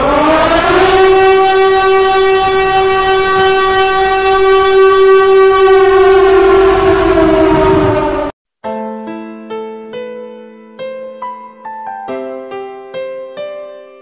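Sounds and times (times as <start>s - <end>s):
siren wailing: 0.0s - 8.3s.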